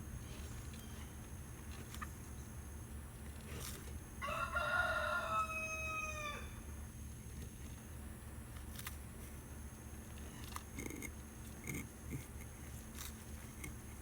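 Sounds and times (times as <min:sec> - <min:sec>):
rooster crowing: 0:04.2 - 0:06.7.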